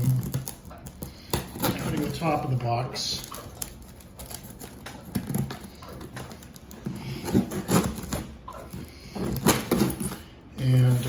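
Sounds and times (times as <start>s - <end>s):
cardboard box rustling and scraping: 1.4s - 2.5s, 3.8s - 10.3s.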